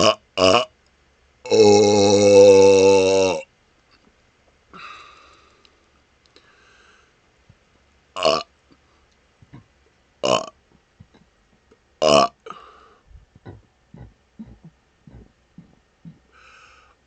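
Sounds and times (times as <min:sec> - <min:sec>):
loud burps: 0:00.0 - 0:00.7, 0:01.5 - 0:03.5, 0:08.2 - 0:08.5, 0:09.5 - 0:10.6, 0:12.0 - 0:12.6.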